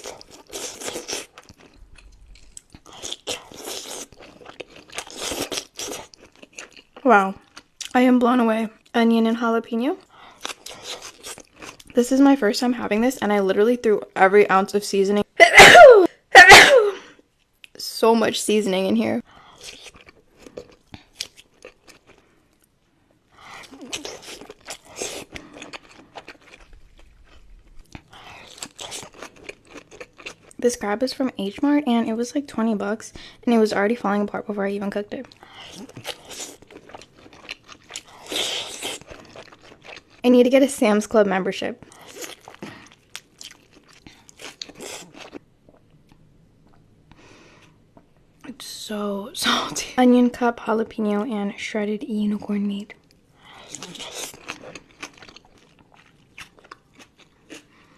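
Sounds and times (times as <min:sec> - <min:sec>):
crunchy biting and chewing: 0:23.4 - 0:30.6, 0:35.3 - 0:40.2, 0:53.6 - 0:57.9.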